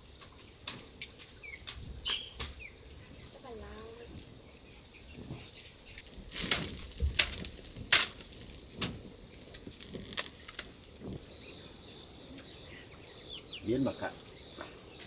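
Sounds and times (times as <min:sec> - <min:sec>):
crickets buzzing: 0:00.0 - 0:15.0
wood snapping and crunching: 0:05.9 - 0:11.2.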